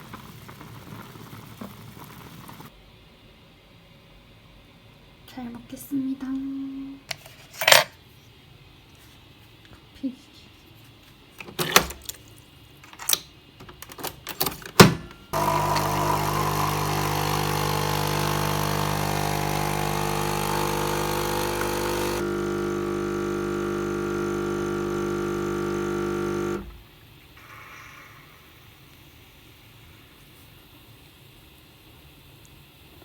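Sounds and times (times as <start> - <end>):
coffee machine pump humming: 15.3 - 26.9.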